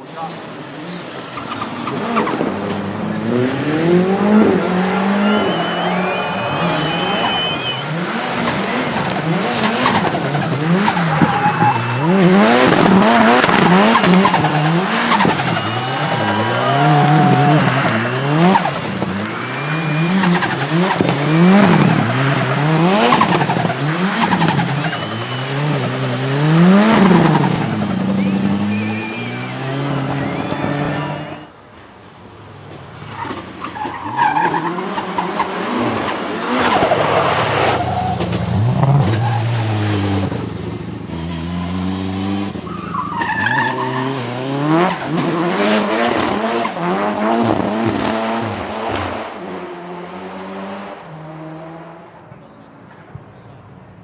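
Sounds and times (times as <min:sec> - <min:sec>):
turbocharged engine revving: 0:00.7 - 0:31.5, 0:34.4 - 0:52.1
tyres squealing: 0:09.5 - 0:26.0, 0:42.6 - 0:44.3.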